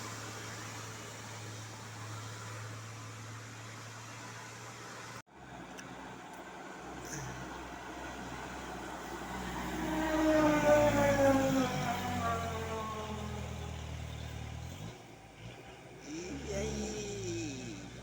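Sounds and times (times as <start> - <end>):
bus driving past: 0.0 - 18.0.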